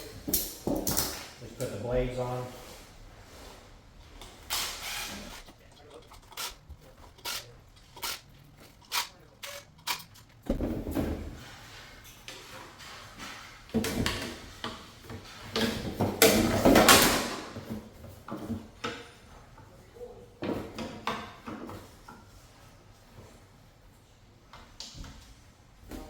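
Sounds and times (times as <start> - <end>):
fan parts knocking and scraping: 0.0 - 19.7.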